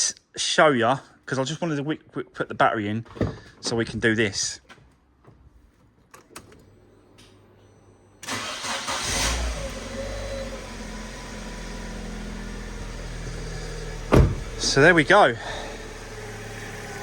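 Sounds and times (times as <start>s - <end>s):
car engine starting and idling: 8.2s - 17.0s.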